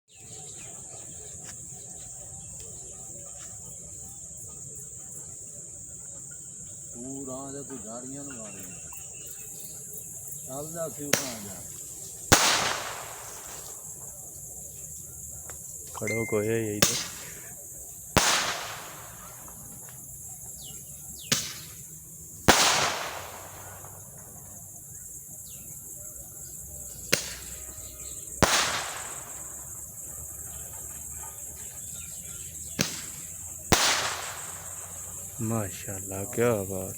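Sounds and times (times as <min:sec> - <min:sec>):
crickets chirring: 0:00.1 - 0:36.9
firework bangs with echo: 0:10.9 - 0:11.7, 0:12.3 - 0:14.0, 0:16.8 - 0:19.9, 0:21.2 - 0:24.4, 0:27.1 - 0:27.6, 0:28.4 - 0:30.0, 0:32.8 - 0:35.6.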